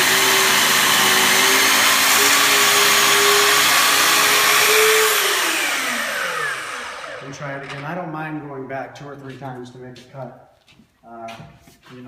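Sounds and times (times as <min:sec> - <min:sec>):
electric saw cutting wood: 0:00.0 - 0:07.8.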